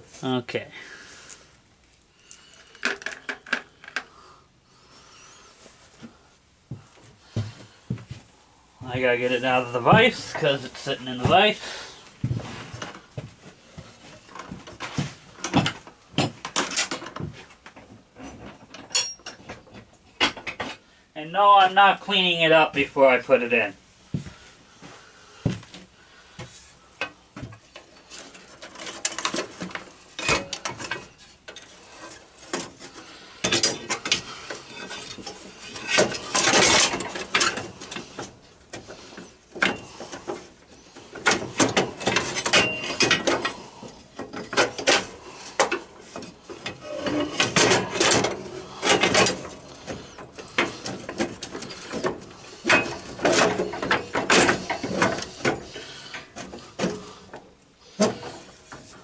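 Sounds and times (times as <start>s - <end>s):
metal parts clanking and scraping: 2.3s - 4.1s, 14.0s - 20.8s, 27.0s - 59.0s.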